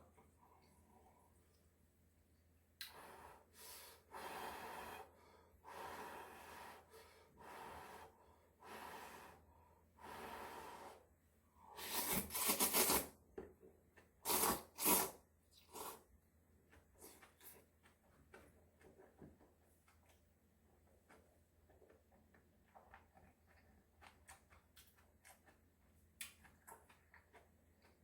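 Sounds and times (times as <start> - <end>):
close eating sounds: 14.0 - 28.0.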